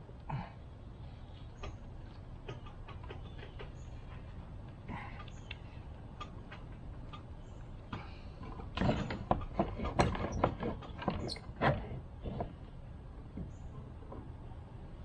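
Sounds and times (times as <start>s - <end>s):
sharp knocks and clicks: 7.9s - 12.6s.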